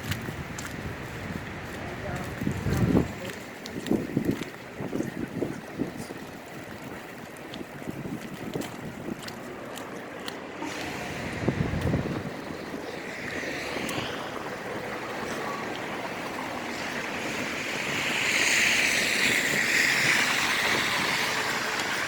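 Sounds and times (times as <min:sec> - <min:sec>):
vehicle tyres hissing through slush: 0:00.0 - 0:22.0
wind buffeting microphone: 0:00.0 - 0:22.0.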